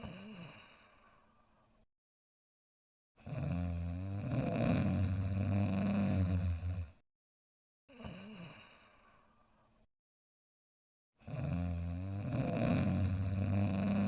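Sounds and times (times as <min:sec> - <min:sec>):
breath: 0:00.0 - 0:01.8, 0:07.9 - 0:09.9
cartoon dog snoring: 0:03.2 - 0:07.0, 0:11.2 - 0:14.0.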